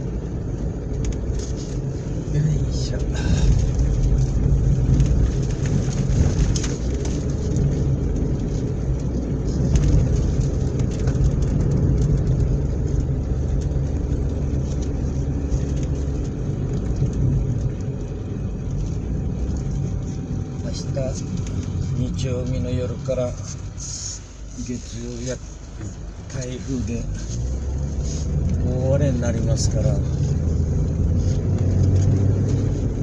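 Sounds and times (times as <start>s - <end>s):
car engine and road noise: 0.0s - 33.0s.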